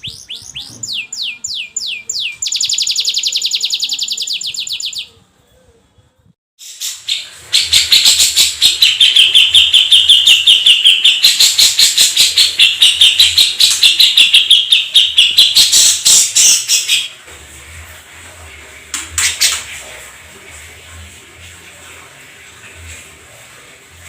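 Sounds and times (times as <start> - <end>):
canary singing rolling trill: 0.0 - 17.2.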